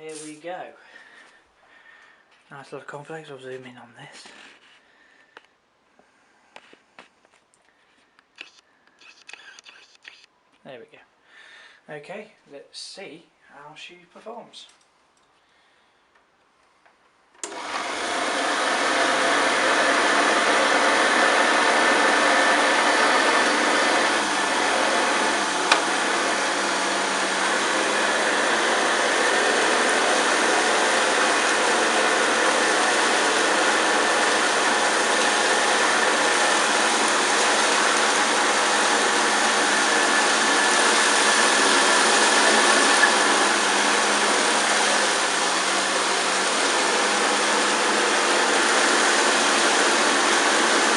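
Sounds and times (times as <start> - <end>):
vacuum cleaner motor running: 17.4 - 50.9.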